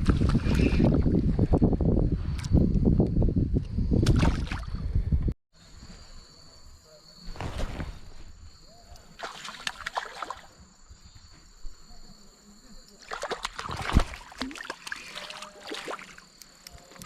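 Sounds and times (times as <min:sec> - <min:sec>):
water splashing around canoe: 0:09.2 - 0:10.6, 0:13.0 - 0:16.3.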